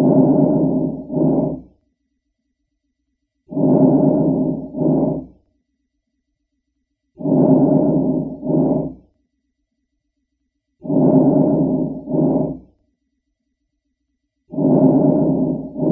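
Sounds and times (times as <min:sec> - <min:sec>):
breathing through stethoscope: 0:00.0 - 0:01.6, 0:03.5 - 0:05.3.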